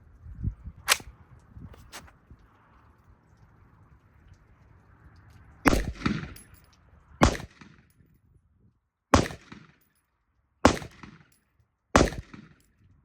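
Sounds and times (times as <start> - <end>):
rifle shots with echo: 5.7 - 6.5, 7.2 - 7.8, 9.2 - 9.8, 10.6 - 11.4, 12.0 - 12.6.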